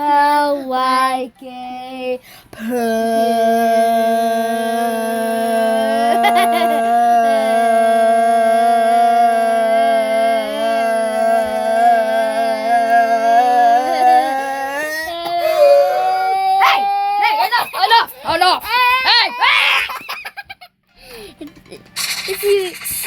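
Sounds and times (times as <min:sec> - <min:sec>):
person singing long note: 0:02.6 - 0:16.4.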